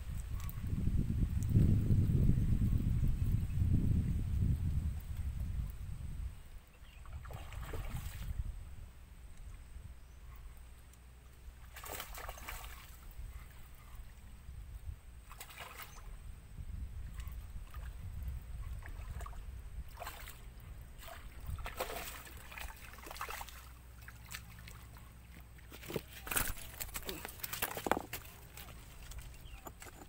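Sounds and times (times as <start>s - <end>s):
water sloshing and splashing: 7.0s - 8.4s, 11.6s - 13.8s, 15.2s - 16.1s, 17.0s - 30.0s
steady low rumble: 16.0s - 30.0s.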